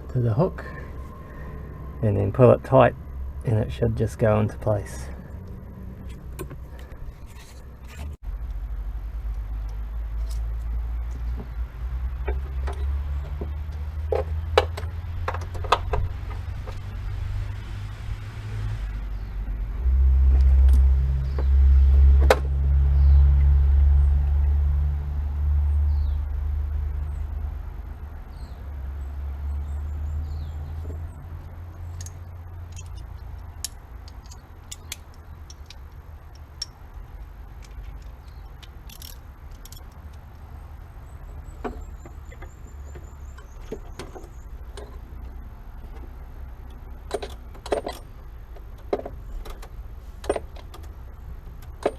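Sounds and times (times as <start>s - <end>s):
low rumble: 0.0s - 34.0s
metal clicks and clinks: 31.9s - 40.2s.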